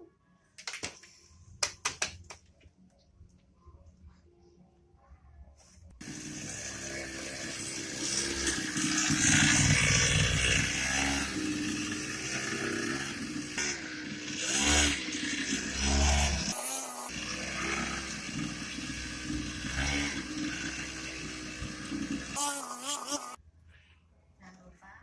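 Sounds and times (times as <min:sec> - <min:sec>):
small two-stroke engine revving: 0:06.0 - 0:23.4.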